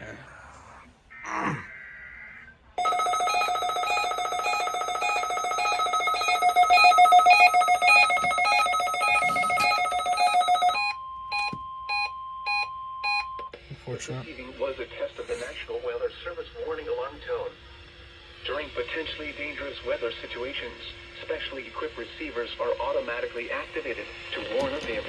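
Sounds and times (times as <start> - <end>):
electronic ringing alert beeps: 2.8 - 13.4
steady warning alarm tone: 2.8 - 17.5.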